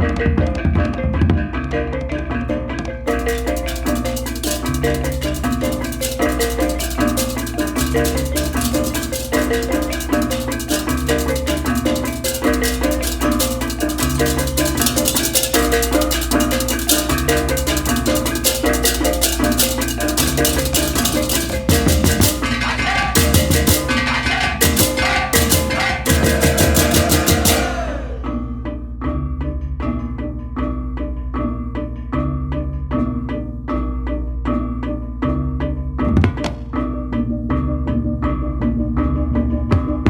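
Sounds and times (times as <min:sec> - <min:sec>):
hand drum drumming: 0:00.0 - 0:28.3, 0:36.1 - 0:36.8, 0:39.7 - 0:40.0
cymbals clashing: 0:03.1 - 0:28.5.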